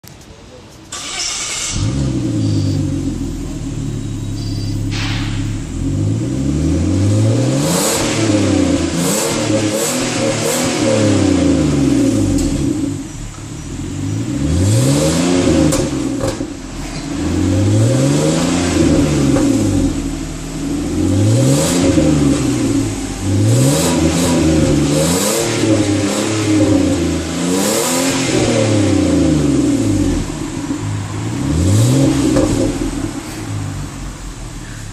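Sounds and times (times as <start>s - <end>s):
car engine revving: 0.9s - 34.9s
exhaust pops and crackles: 15.4s - 17.8s, 18.4s - 20.2s, 32.0s - 33.5s.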